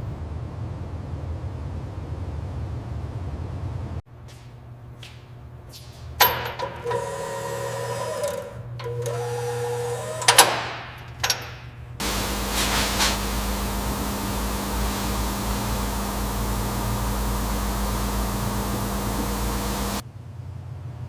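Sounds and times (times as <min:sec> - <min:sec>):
steady noisy hum: 0:00.0 - 0:21.0
small electric motor whirring: 0:06.8 - 0:10.4.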